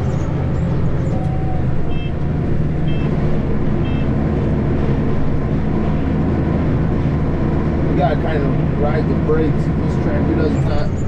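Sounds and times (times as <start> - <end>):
tractor engine running: 0.0 - 11.0
short electronic beeps: 2.8 - 3.2, 3.8 - 4.1.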